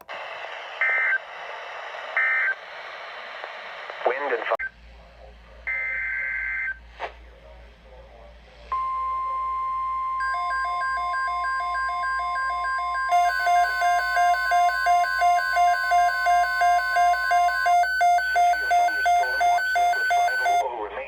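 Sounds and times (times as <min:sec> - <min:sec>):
steady single-pitch warning tone: 0:08.7 - 0:20.6
fast two-pitch alternating beep: 0:08.8 - 0:20.6.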